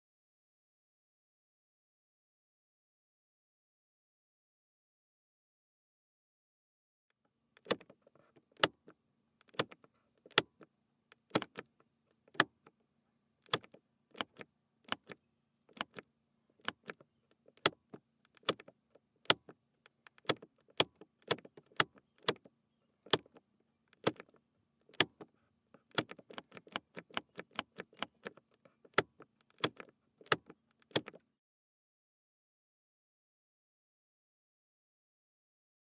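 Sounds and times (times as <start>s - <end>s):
plastic switch clicking: 9.4s - 10.5s, 13.4s - 16.0s, 20.1s - 22.5s, 24.0s - 24.3s, 24.9s - 25.3s, 25.9s - 31.2s.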